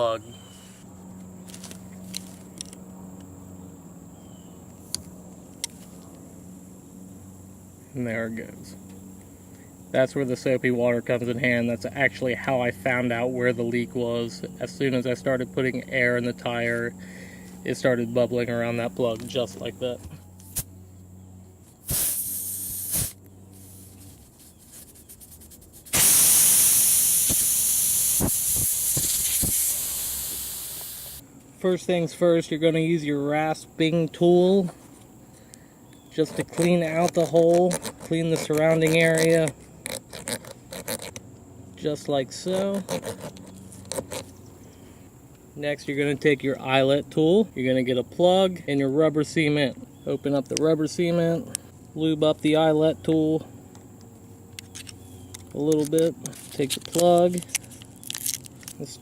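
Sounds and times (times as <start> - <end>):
crickets chirping: 0.0 - 59.0
air hissing out of a tire: 21.8 - 23.9, 25.8 - 31.2.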